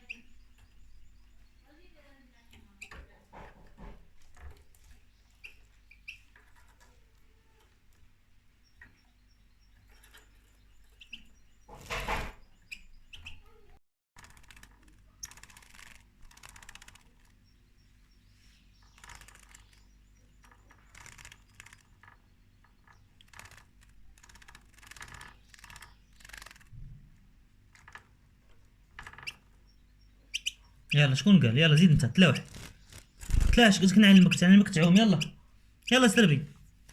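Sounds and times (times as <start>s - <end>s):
faint bird chirps: 0.0s - 3.0s, 8.6s - 13.8s, 16.4s - 23.6s, 29.2s - 36.4s
bird wing flutters: 14.2s - 17.3s, 23.3s - 26.7s, 32.3s - 33.9s.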